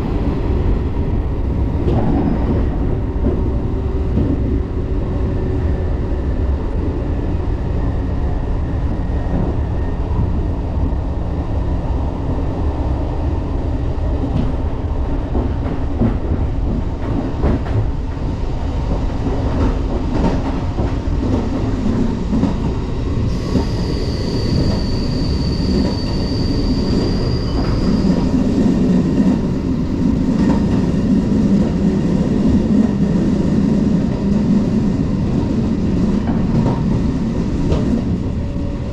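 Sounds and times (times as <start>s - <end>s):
train rumble: 0.0s - 38.9s
high steady squeal: 23.3s - 28.6s.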